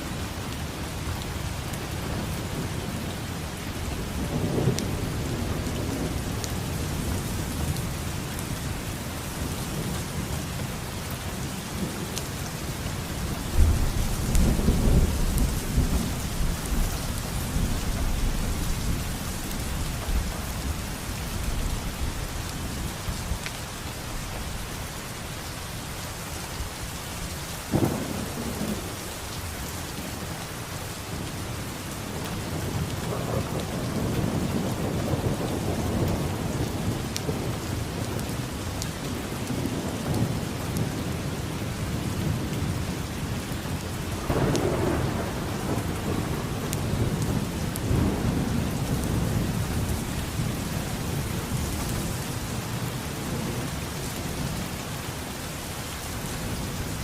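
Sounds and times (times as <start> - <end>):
steady rain: 0.0 - 57.0
thunder rumbling: 13.2 - 22.8, 27.7 - 29.0, 44.2 - 54.6.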